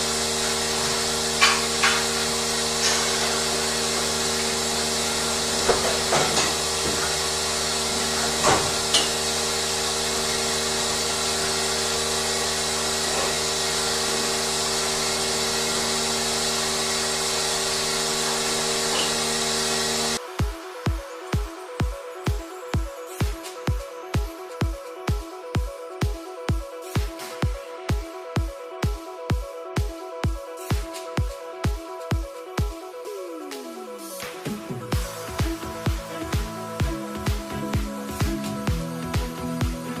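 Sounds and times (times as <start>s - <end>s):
machinery humming and hissing: 0.0s - 24.5s, 33.1s - 40.0s
knocks and clanks: 0.8s - 3.4s, 5.5s - 7.2s, 8.2s - 9.2s.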